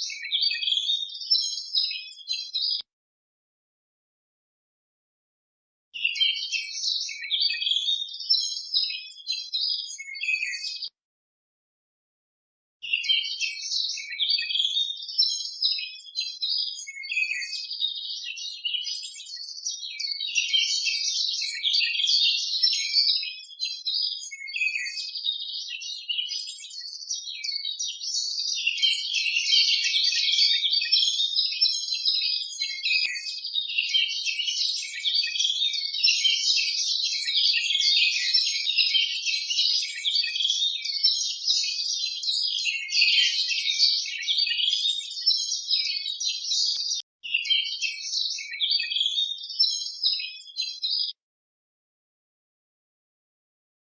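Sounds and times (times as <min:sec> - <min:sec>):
small birds chirping: 0:00.0 - 0:02.9, 0:06.0 - 0:11.0, 0:12.8 - 0:51.2.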